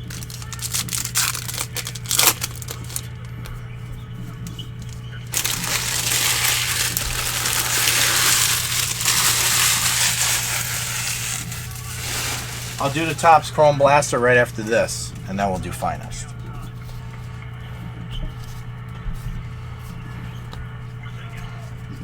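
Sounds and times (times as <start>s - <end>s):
plastic wrapping crinkling: 0.0s - 3.6s, 4.4s - 14.0s.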